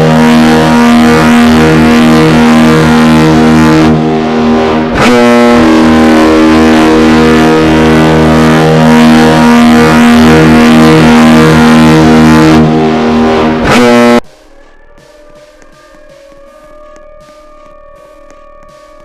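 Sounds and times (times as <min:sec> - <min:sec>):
air horn low steady tone: 0:00.0 - 0:19.0.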